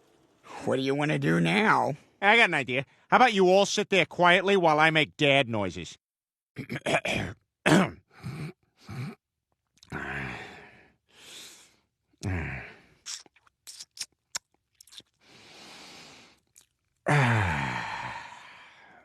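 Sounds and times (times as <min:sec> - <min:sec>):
man groaning and sighing: 0:08.2 - 0:09.2, 0:09.8 - 0:10.8, 0:12.2 - 0:12.9, 0:17.0 - 0:19.0
mouth clicks: 0:13.0 - 0:15.2.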